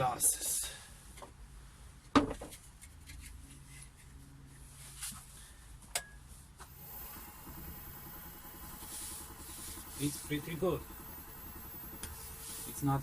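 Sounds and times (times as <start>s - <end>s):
low hum: 6.6s - 13.0s
wood lathe running: 6.6s - 13.0s.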